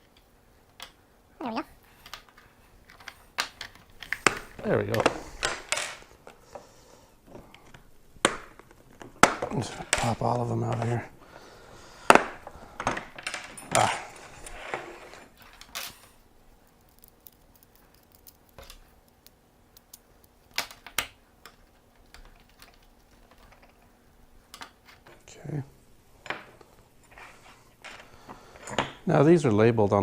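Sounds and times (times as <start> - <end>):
stones clicking and clattering: 15.4 - 23.8.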